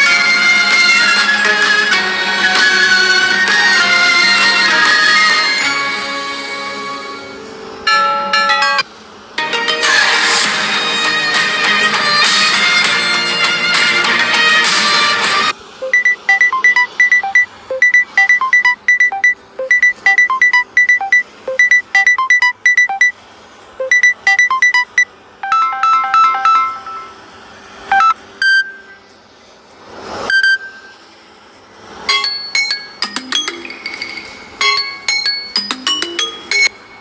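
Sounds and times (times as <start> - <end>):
melodic ringtone: 7.9 - 8.8, 15.8 - 23.1, 23.8 - 27.2, 27.9 - 29.0, 32.1 - 37.0
phone chimes: 15.8 - 23.1, 23.8 - 27.2, 27.9 - 29.0, 32.1 - 36.8
short high beeps: 15.8 - 23.1, 23.8 - 27.2, 27.9 - 29.0, 30.3 - 30.9.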